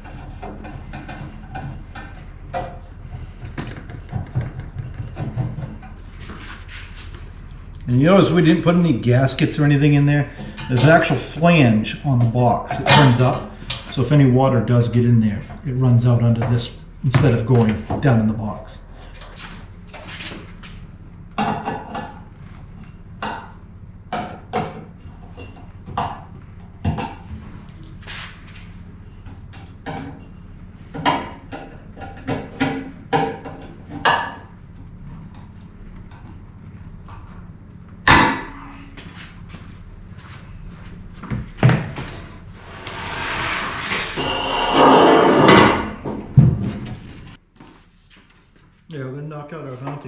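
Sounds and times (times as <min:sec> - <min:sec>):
metal clanks and knocks: 0:00.0 - 0:06.5, 0:12.1 - 0:14.0, 0:29.2 - 0:34.6, 0:41.3 - 0:47.0
steady low hum: 0:00.0 - 0:50.0
metal scraping and rattling: 0:42.0 - 0:47.4.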